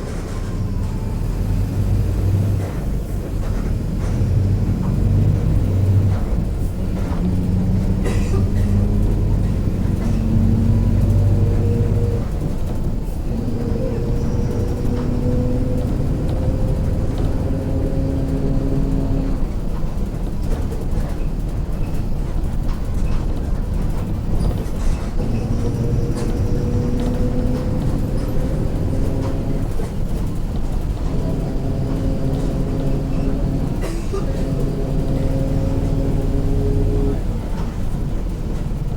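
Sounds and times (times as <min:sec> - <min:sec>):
bus diesel engine drone: 0:00.0 - 0:38.9.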